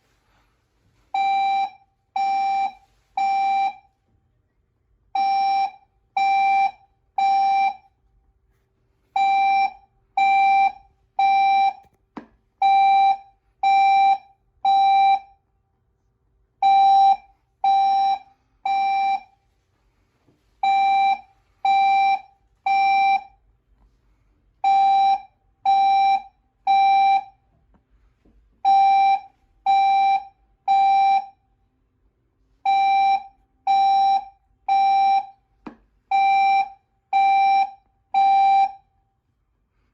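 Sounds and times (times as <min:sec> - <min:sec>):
fire alarm horn tones: 0:01.1 - 0:04.0, 0:36.1 - 0:38.9.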